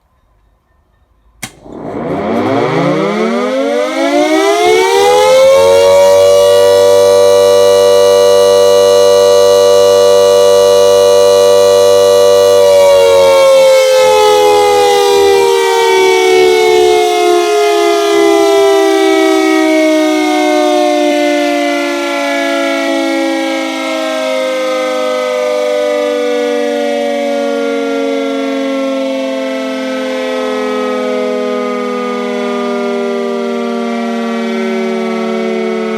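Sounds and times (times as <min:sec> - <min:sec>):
air raid siren wailing: 0:01.3 - 0:35.9
click: 0:01.4 - 0:01.8.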